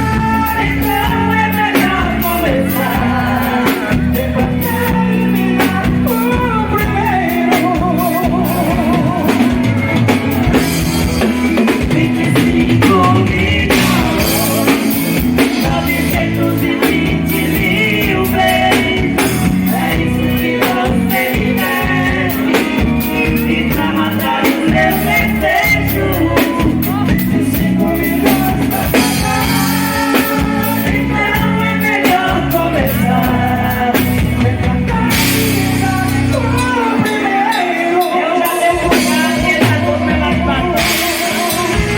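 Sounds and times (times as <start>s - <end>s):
live band playing: 0.0s - 41.9s
woman singing: 0.0s - 41.9s.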